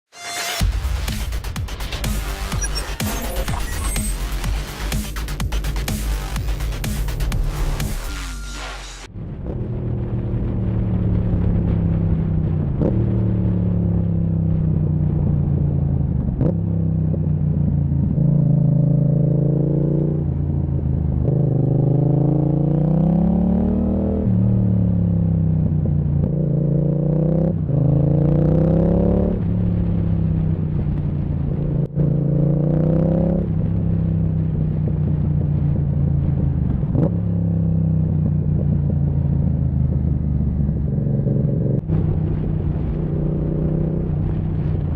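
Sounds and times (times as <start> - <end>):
motorcycle engine revving: 9.5 - 44.9.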